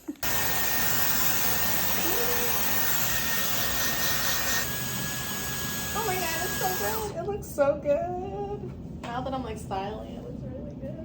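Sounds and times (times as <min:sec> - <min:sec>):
hair dryer blowing with high whine: 0:00.1 - 0:07.2.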